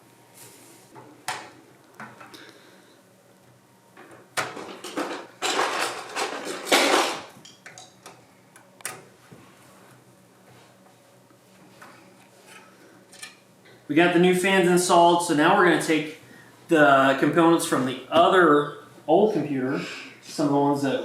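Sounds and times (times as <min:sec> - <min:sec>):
clattering and scraping: 0:04.4 - 0:07.3.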